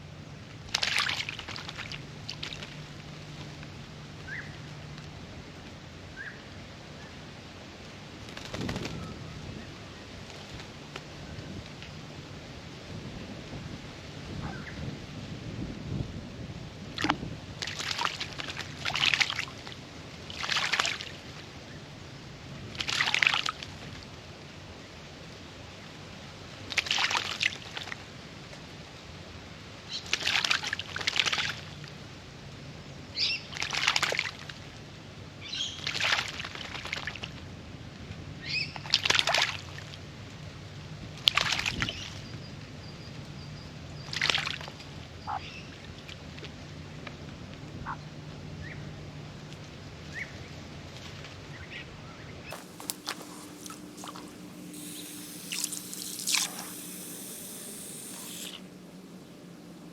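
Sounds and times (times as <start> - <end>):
bird splashing water: 52.5 - 59.9.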